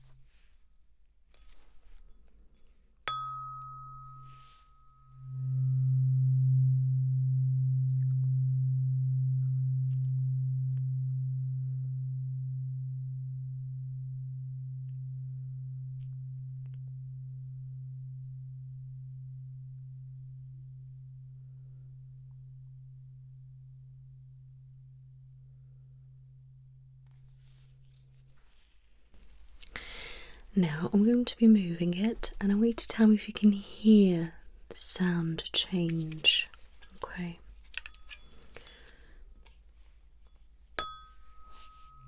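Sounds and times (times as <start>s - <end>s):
tuning fork struck: 3.1s - 27.9s, 40.2s - 42.0s
tuning fork humming: 3.1s - 28.1s, 40.2s - 42.0s.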